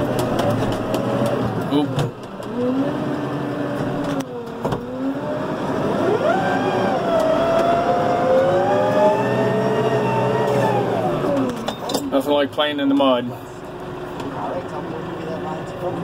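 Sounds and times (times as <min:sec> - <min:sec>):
clunks: 0:00.0 - 0:02.7, 0:10.4 - 0:13.2
tractor engine under load: 0:00.0 - 0:16.0.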